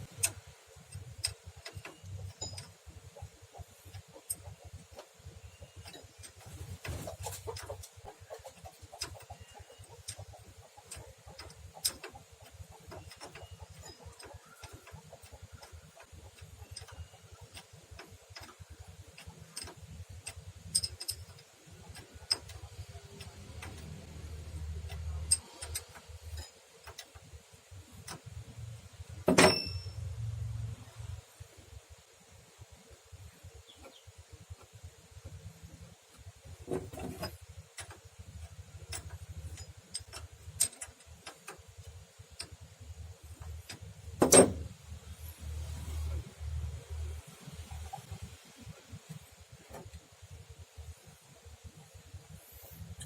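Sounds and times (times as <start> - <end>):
metallic clicks of hand tools: 0.0 - 2.8, 5.8 - 27.3, 36.1 - 46.2.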